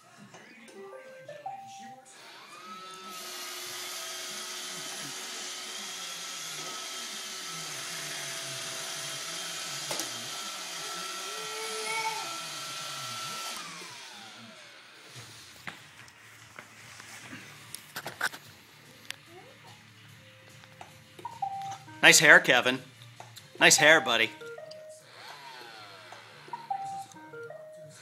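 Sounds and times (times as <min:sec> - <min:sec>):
robot vacuum motor whirring: 0:02.2 - 0:15.6, 0:25.1 - 0:26.6.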